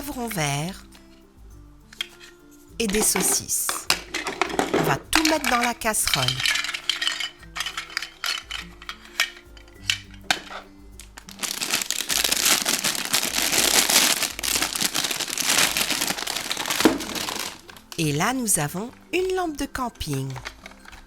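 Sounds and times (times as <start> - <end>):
background music: 0.0 - 21.0
plastic wrapping crinkling: 2.8 - 19.1, 20.0 - 21.0.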